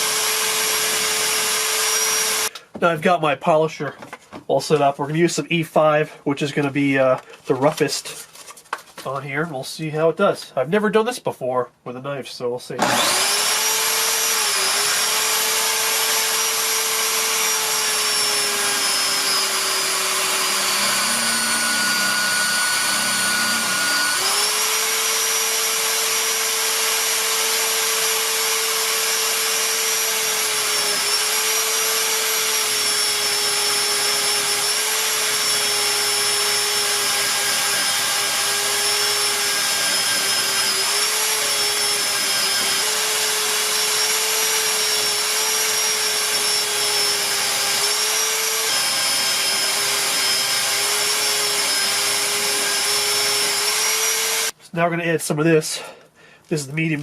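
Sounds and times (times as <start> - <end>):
electric polisher motor whining: 0.0 - 2.5, 12.8 - 54.6.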